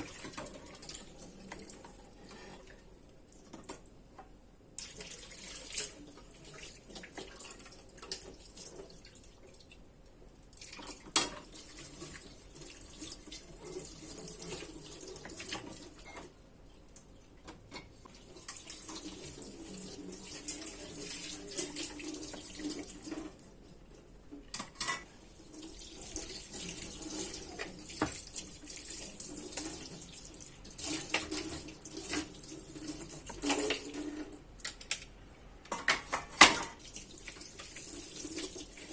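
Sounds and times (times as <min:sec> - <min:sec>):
tap water running into sink: 0:18.1 - 0:23.4, 0:25.4 - 0:34.4, 0:35.9 - 0:38.9.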